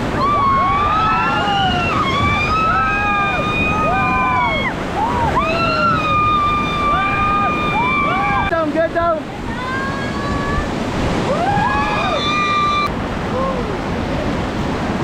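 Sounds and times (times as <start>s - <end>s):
people whooping and screaming: 0.0s - 8.5s, 9.6s - 13.8s
river rapids rushing: 0.0s - 15.0s.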